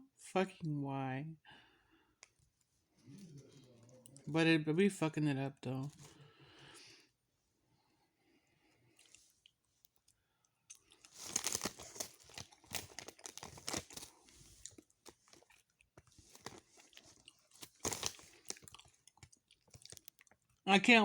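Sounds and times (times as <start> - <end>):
person chewing candy: 8.6 - 20.6.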